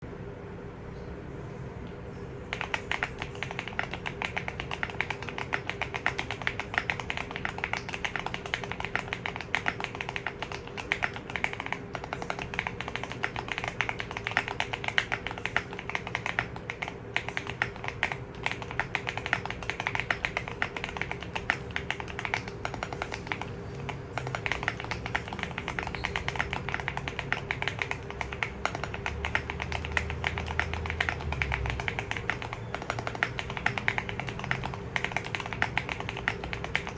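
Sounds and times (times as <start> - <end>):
fast mechanical keyboard typing: 2.5 - 36.9.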